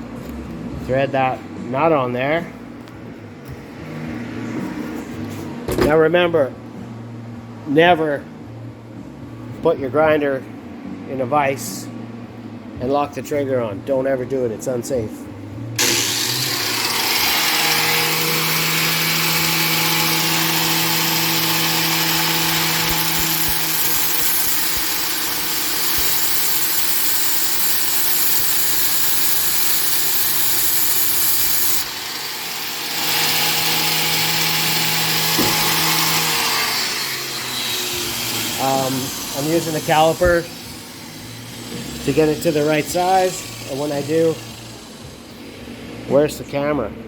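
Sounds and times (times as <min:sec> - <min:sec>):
angle grinder grinding steel: 0:15.8 - 0:45.5.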